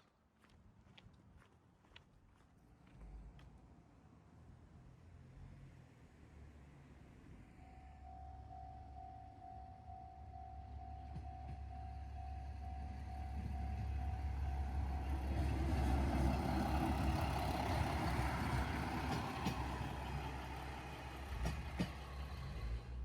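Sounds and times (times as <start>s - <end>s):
diesel train rumbling past: 6.6s - 23.0s
train wheel clacks: 15.3s - 20.5s, 21.2s - 22.8s.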